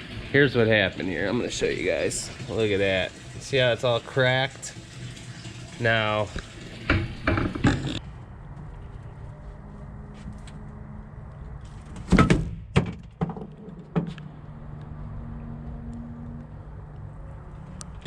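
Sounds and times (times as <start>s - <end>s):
sharp knocks and thuds: 6.9s - 7.8s, 11.9s - 14.2s.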